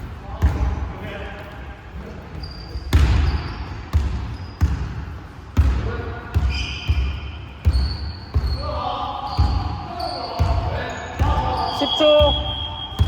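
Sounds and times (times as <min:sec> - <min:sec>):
basketball bouncing on gym floor: 0:02.8 - 0:13.0.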